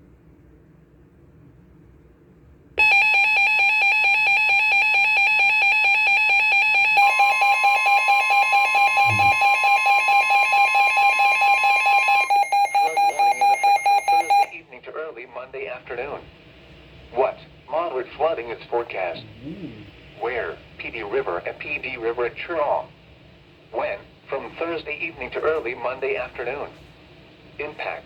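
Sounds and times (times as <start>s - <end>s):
buzzy alarm tone: 2.8s - 14.5s
pure alarm tone: 2.8s - 14.6s
rapid alarm beeping: 2.8s - 14.6s
faint broadcast voice: 9.0s - 9.4s, 17.1s - 22.9s, 23.7s - 26.8s, 27.6s - 28.0s.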